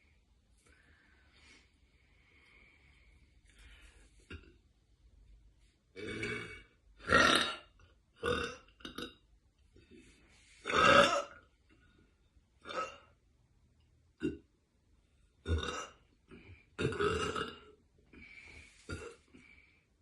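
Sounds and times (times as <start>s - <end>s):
woman burping: 6.0s - 9.2s, 10.6s - 11.4s, 12.6s - 13.2s, 15.4s - 17.8s.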